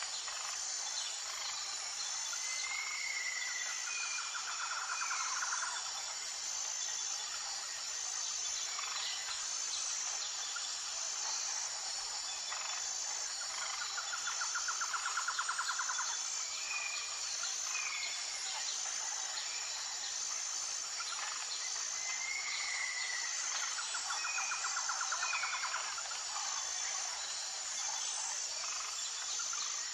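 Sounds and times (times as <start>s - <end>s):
high-pitched insect chorus: 0.0s - 29.9s.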